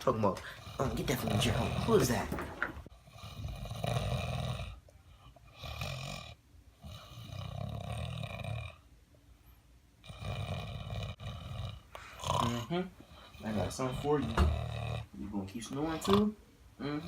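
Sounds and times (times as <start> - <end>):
person snoring: 10.1 - 15.2.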